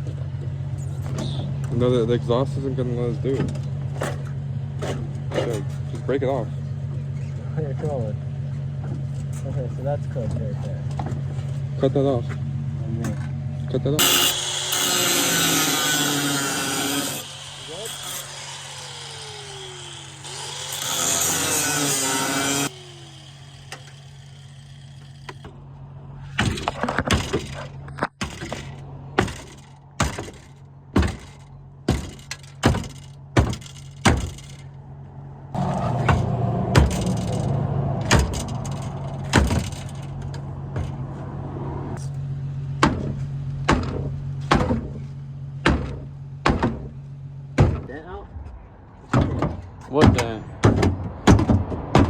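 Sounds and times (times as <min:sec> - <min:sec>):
power tool cutting: 0:14.0 - 0:25.4, 0:35.6 - 0:40.2
hard knocks on car body: 0:29.2 - 0:34.4, 0:36.0 - 0:37.1, 0:39.2 - 0:39.9, 0:42.8 - 0:47.9, 0:49.1 - 0:52.0.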